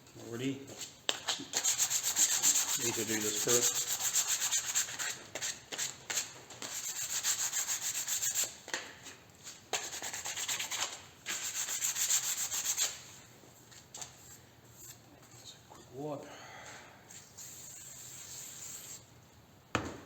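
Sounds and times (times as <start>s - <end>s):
sandpaper rubbing a surface: 1.5s - 8.6s, 9.5s - 13.1s, 17.1s - 19.1s.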